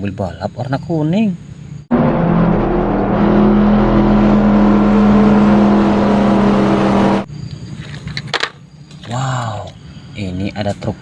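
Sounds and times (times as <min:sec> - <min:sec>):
race car engine: 0:01.9 - 0:07.3.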